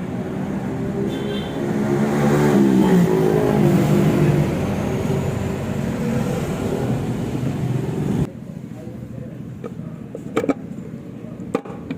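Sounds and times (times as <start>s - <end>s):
small motorcycle engine revving: 0.6s - 7.0s.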